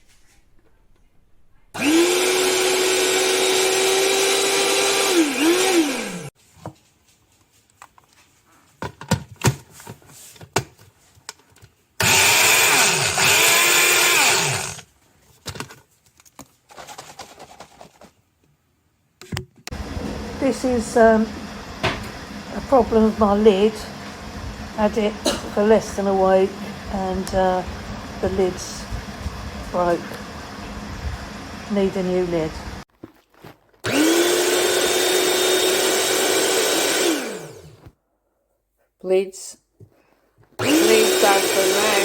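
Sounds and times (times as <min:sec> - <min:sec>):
blender motor running: 0:01.8 - 0:06.3, 0:12.0 - 0:14.9, 0:19.7 - 0:32.8, 0:33.8 - 0:37.8, 0:40.6 - 0:42.0.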